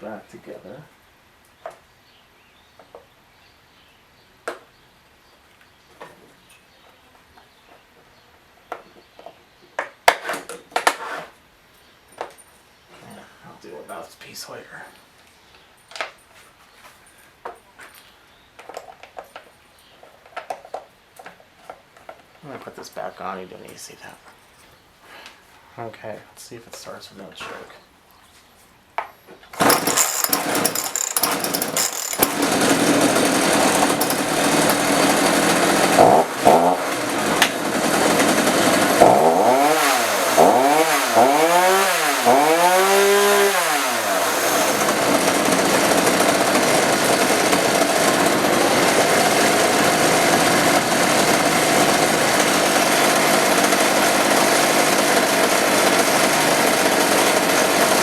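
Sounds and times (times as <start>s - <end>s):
chainsaw engine revving: 29.6s - 58.0s.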